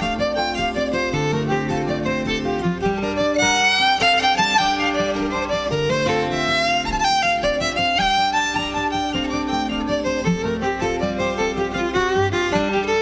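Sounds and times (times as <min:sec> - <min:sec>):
solo fiddle playing a jig: 0:00.0 - 0:13.0.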